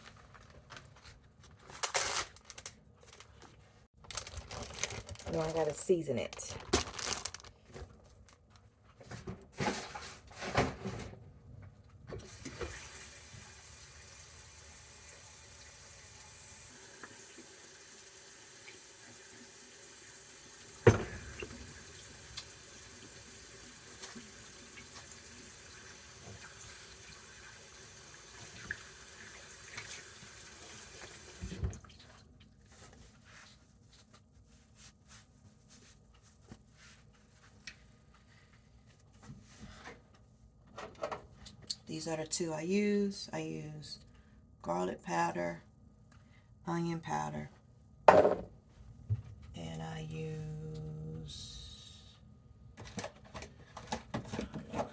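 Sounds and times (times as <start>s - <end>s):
kitchen tap running: 12.2s - 31.7s.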